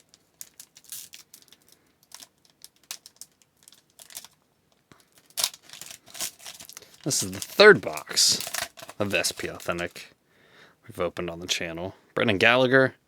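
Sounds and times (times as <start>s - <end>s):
foil wrapper crinkling: 0.0s - 10.1s.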